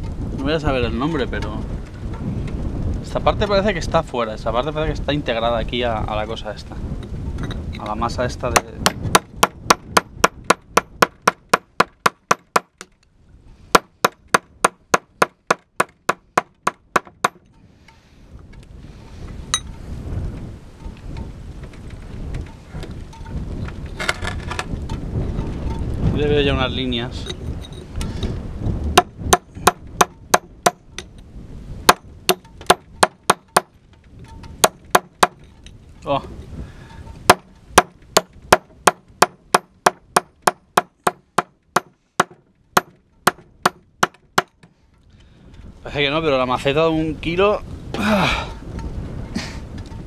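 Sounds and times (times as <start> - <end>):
wind noise on microphone: 0.0 - 50.0
hammer striking rock: 8.5 - 12.9, 13.7 - 17.4, 29.0 - 31.1, 31.9 - 33.8, 34.6 - 35.4, 37.3 - 44.7.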